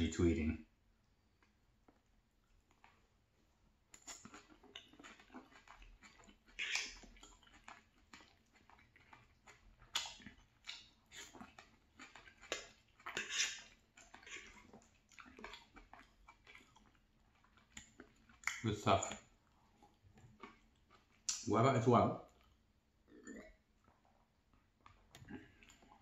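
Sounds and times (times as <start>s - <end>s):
chewing and crunching food: 1.0s - 26.0s
wet mouth clicks: 3.9s - 19.3s, 21.2s - 21.5s, 24.9s - 26.0s.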